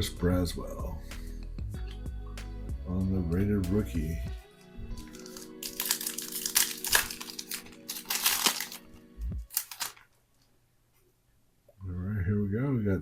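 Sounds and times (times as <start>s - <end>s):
soft background music: 0.0s - 10.0s
foil wrapper crinkling and tearing: 5.0s - 10.5s.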